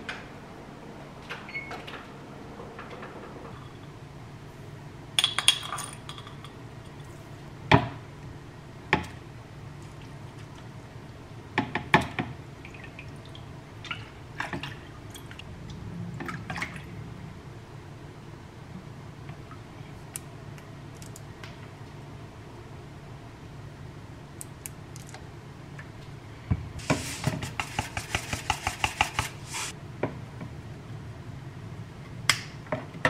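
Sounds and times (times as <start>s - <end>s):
low steady hum: 0.0s - 33.0s
dishes and glass clinking: 5.2s - 7.0s.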